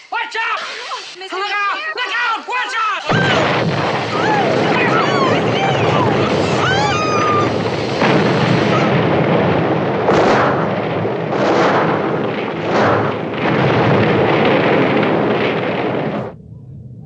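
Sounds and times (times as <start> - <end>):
fire rumbling: 3.0 - 17.0
gulls shrieking: 3.1 - 9.2
explosion blasts: 3.1 - 17.0.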